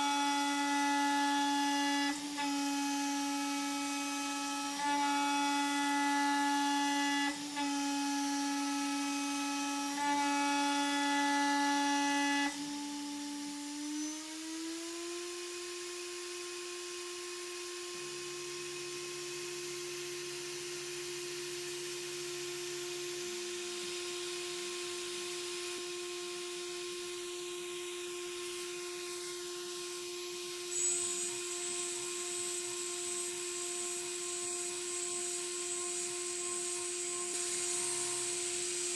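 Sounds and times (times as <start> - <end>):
router spindle whining: 23.9 - 38.9.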